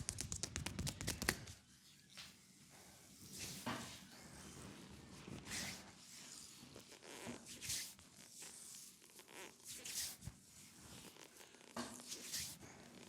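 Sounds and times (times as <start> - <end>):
hands swishing over skin: 12.0 - 12.6.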